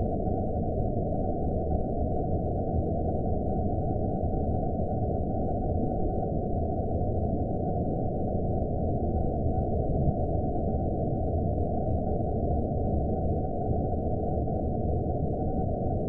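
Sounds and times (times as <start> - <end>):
muffled low rumble: 7.4 - 16.0.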